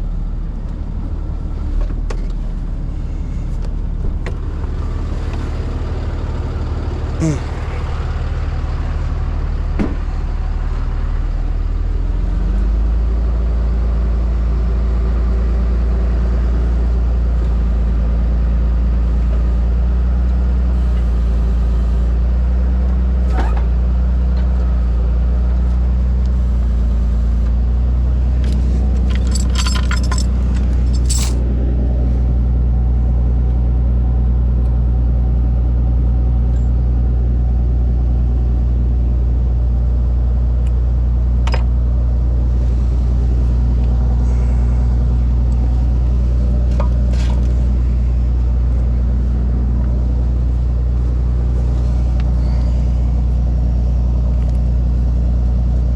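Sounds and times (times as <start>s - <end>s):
truck engine running: 0.0s - 23.0s, 23.8s - 55.9s
metallic clanks: 28.5s - 31.4s.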